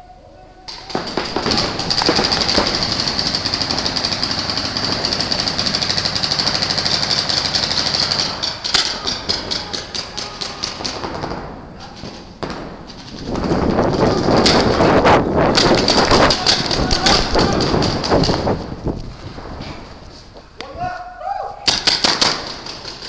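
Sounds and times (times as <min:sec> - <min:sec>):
paintball markers firing: 0:00.7 - 0:14.9, 0:15.5 - 0:18.8, 0:21.7 - 0:23.0.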